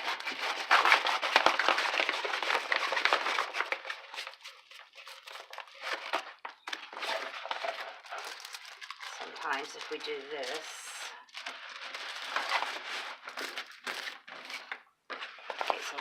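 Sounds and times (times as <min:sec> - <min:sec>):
plastic film crinkling: 0:00.0 - 0:16.0
plastic crackles and taps: 0:01.2 - 0:09.7, 0:12.2 - 0:16.0.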